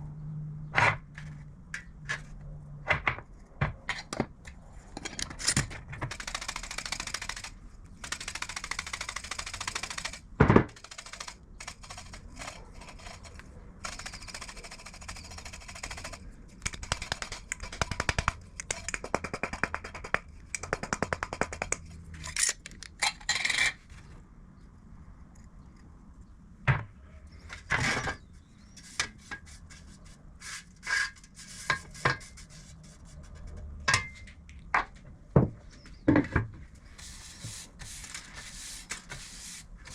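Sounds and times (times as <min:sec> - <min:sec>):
rasping scraping noise: 0:27.7 - 0:33.8.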